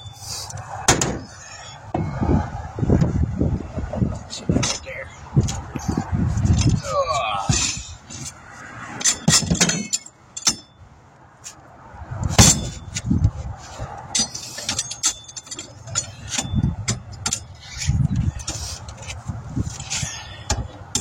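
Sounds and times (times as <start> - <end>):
metal tire tools clinking: 0.0 - 2.5, 4.1 - 21.0
wind buffeting microphone: 0.5 - 9.0, 11.7 - 14.2, 15.7 - 21.0.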